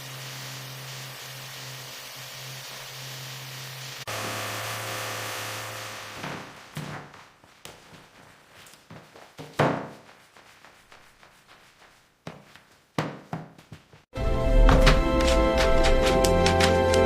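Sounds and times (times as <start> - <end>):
thuds and knocks: 9.4 - 10.1.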